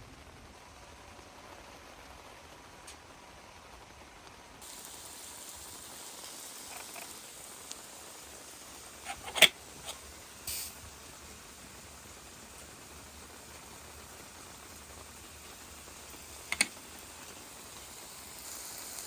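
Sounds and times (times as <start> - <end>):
rain hissing: 0.0 - 19.0
sharp clicks or knocks: 16.5 - 16.8.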